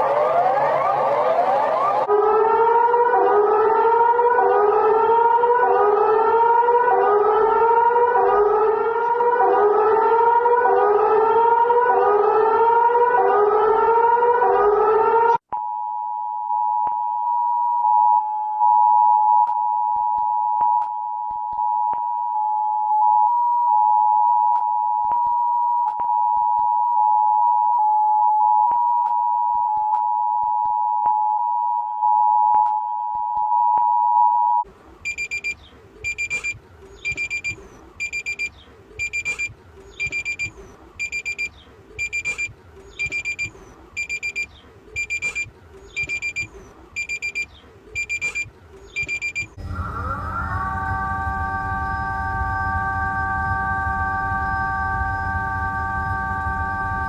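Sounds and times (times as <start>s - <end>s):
electronic siren whooping: 0.0s - 15.4s, 49.0s - 57.0s
two-tone alert signal: 35.1s - 57.0s.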